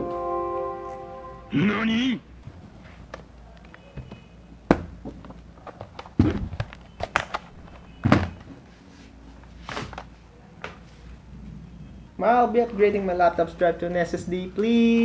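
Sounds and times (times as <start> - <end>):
dull thuds: 2.4 - 8.6.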